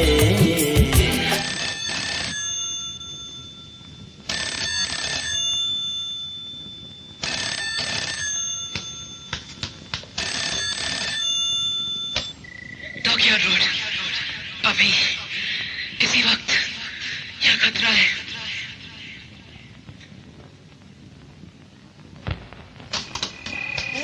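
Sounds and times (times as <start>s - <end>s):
telephone ringing: 0.9s - 13.8s, 23.1s - 24.0s.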